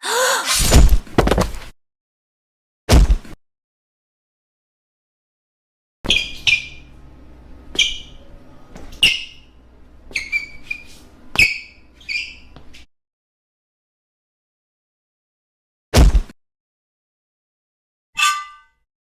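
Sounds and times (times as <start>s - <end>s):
high chirping squeaks: 10.1s - 12.5s.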